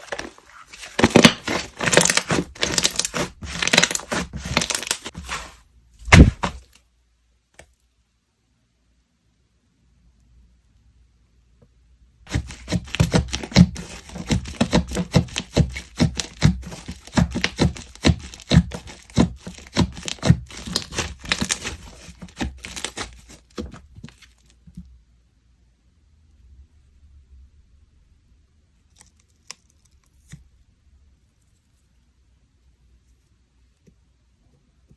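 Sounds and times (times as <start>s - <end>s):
hands squishing sticky slime: 0.8s - 6.6s, 12.3s - 23.6s.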